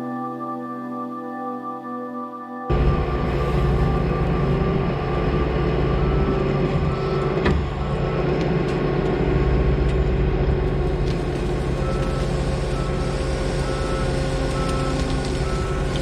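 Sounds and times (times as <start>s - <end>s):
reversing alarm beeping: 2.7s - 10.4s, 11.2s - 16.0s
heavy vehicle engine running: 2.7s - 16.0s.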